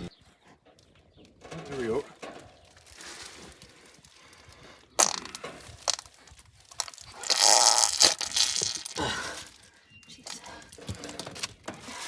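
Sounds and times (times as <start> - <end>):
sudden wet burst: 6.8 - 9.2.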